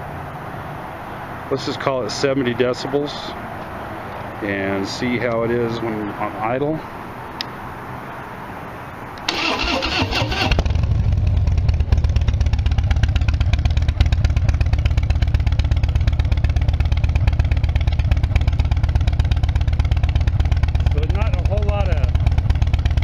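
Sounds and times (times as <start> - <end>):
motorcycle starter cranking: 9.2 - 11.0
motorcycle engine idling: 10.3 - 23.0.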